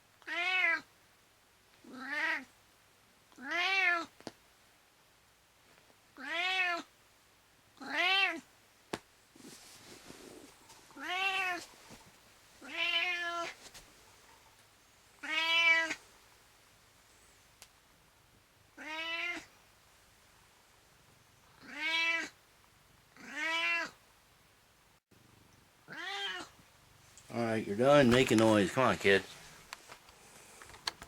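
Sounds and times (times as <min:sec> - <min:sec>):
cat meowing: 0:00.2 - 0:00.9, 0:01.9 - 0:02.5, 0:03.4 - 0:04.1, 0:06.2 - 0:06.9, 0:07.8 - 0:08.4, 0:11.0 - 0:11.6, 0:12.6 - 0:13.6, 0:15.2 - 0:16.0, 0:18.8 - 0:19.5, 0:21.6 - 0:22.4, 0:23.2 - 0:24.0, 0:25.9 - 0:26.6.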